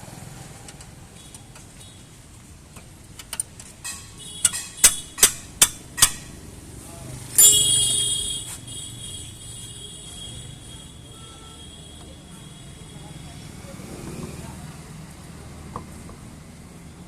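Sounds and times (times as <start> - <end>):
hammer striking metal: 3.8 - 6.4
metallic ringing: 3.8 - 6.4, 7.4 - 8.2.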